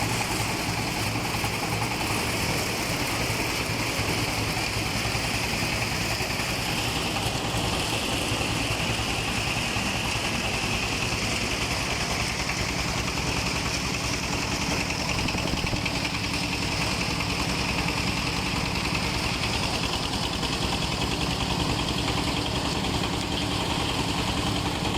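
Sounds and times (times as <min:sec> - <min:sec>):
chopper machine running: 0:00.0 - 0:24.9.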